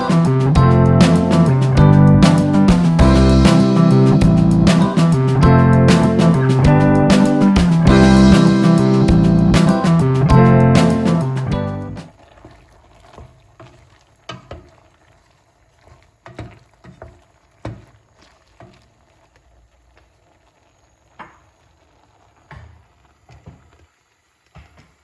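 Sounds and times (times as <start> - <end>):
background guitar music: 0.0 - 12.1.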